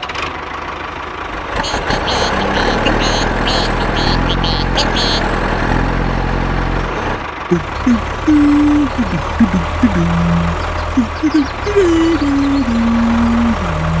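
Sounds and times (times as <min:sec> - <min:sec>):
small engine humming: 0:01.4 - 0:05.5, 0:07.3 - 0:14.0.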